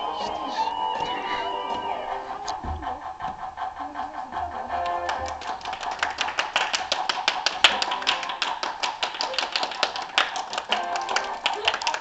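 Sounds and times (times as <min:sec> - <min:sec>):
faint music: 0:00.0 - 0:05.4
rapid tapping and clicking: 0:01.8 - 0:12.0.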